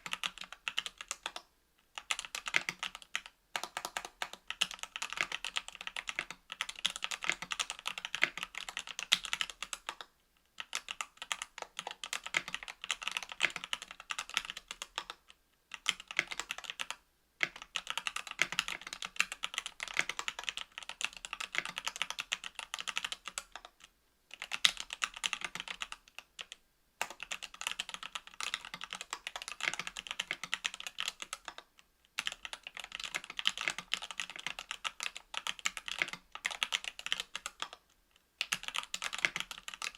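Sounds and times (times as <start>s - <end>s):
mechanical keyboard typing: 0.0s - 1.4s, 2.0s - 37.8s, 38.4s - 39.9s.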